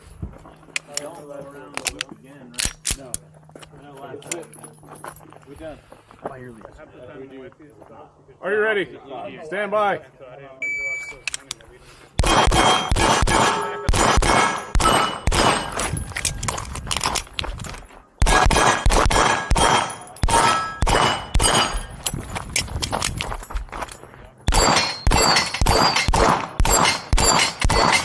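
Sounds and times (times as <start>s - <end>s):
rapid pistol shots: 12.2s - 15.9s, 18.2s - 21.9s, 24.5s - 28.0s
steel plate ringing clang: 12.2s - 15.9s, 18.2s - 22.0s, 24.5s - 28.0s.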